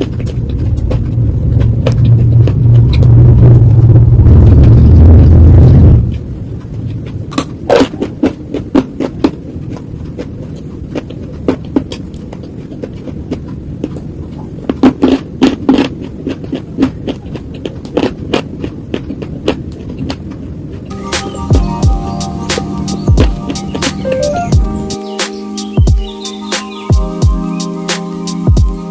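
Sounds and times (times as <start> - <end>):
slate crunching and snapping: 0.0 - 3.1, 6.1 - 20.8
low background hum: 0.0 - 25.0
loud low rumble: 0.4 - 6.6, 20.9 - 25.0.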